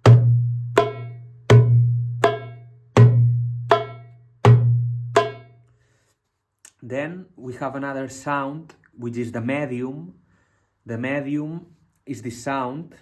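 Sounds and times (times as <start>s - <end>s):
darbuka deep bass strokes: 0.0s - 5.6s
darbuka sharp high strokes: 0.0s - 5.7s.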